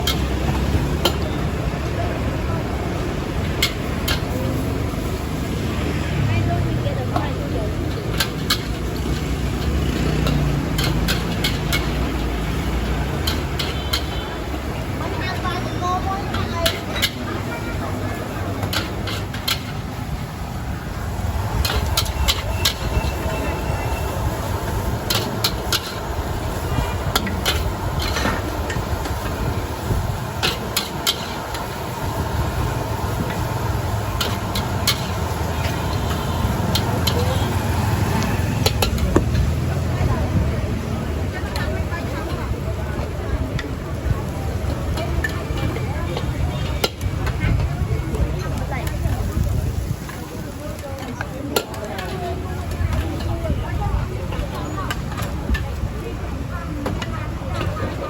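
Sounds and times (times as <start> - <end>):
traffic rumble: 0.0 - 58.0
metal utensil clanking on pan: 8.0 - 12.2, 13.2 - 14.2.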